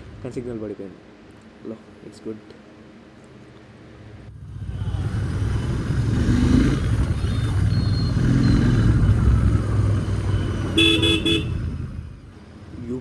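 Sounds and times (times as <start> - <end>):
motorcycle engine pulling away: 4.3 - 13.0
vehicle horn toot: 10.2 - 11.9.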